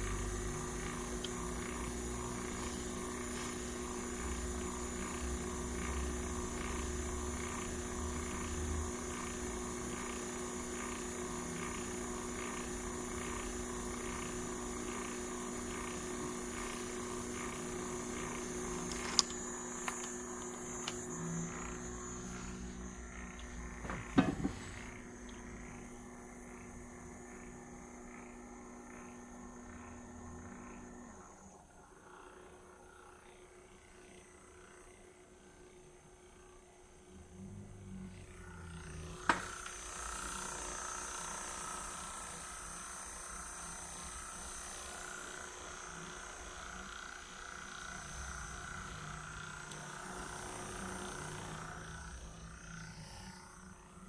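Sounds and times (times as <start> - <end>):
machine electric whine: 0.0 - 54.0
knocks: 23.8 - 24.7.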